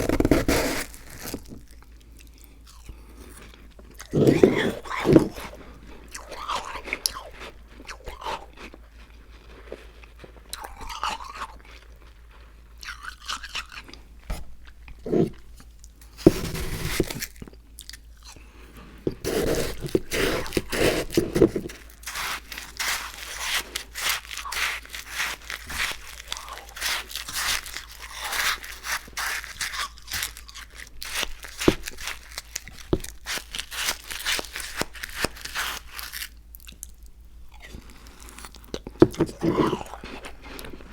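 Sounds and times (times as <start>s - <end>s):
chewing crunchy food: 0.0s - 40.9s.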